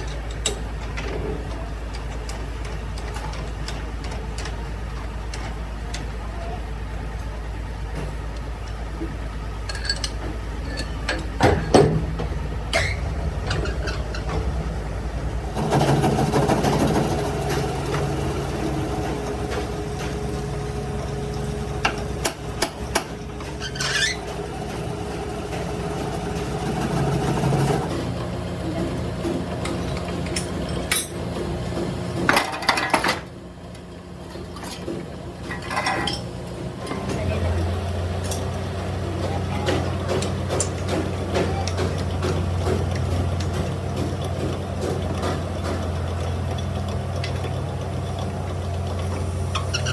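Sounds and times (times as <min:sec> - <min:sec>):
workshop machinery running: 0:00.0 - 0:49.9.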